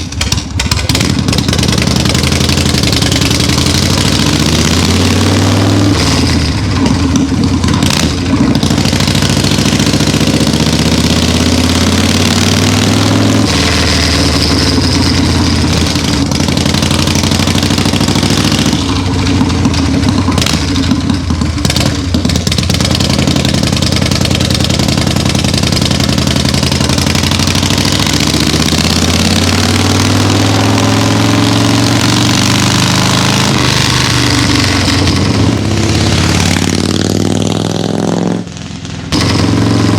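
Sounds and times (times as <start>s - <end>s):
motorcycle engine idling and revving: 0.0s - 39.9s
sharp throttle blips: 29.8s - 39.9s.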